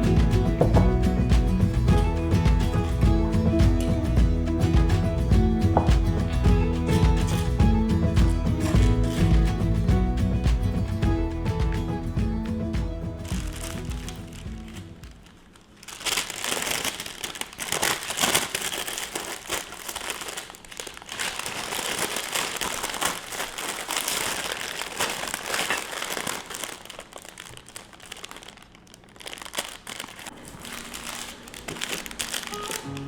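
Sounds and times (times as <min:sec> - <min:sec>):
wrapping crinkling and rustling: 0:11.5 - 0:33.0.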